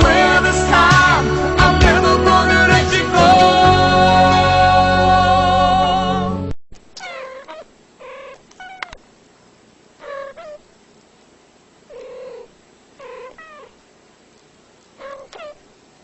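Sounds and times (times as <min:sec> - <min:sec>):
cat meowing: 0:07.0 - 0:09.0, 0:11.9 - 0:13.7, 0:15.0 - 0:15.6.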